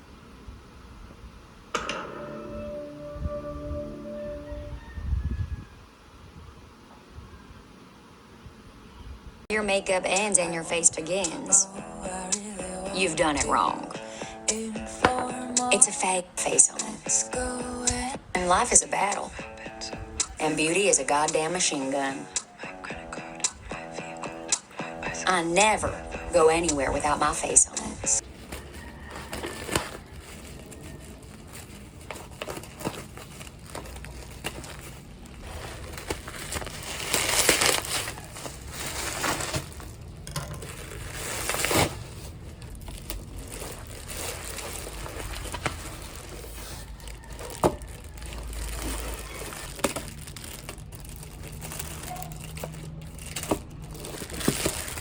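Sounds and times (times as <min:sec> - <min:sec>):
rustling and crinkling: 0:26.7 - 0:55.0.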